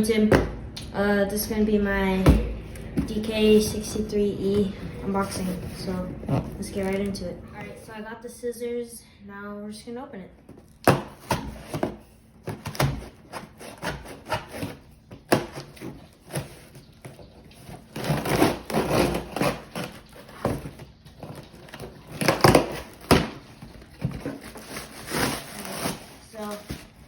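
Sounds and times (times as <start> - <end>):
scissors cutting packing tape: 12.5 - 23.4, 24.0 - 26.9.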